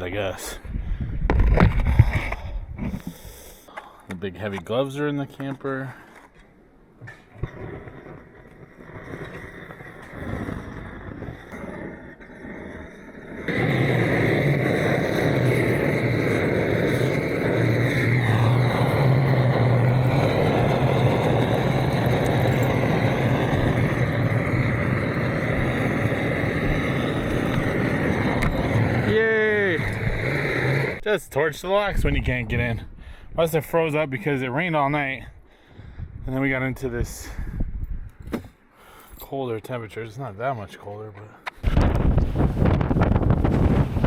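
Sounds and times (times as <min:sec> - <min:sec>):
vehicle engine humming: 0:13.5 - 0:29.1.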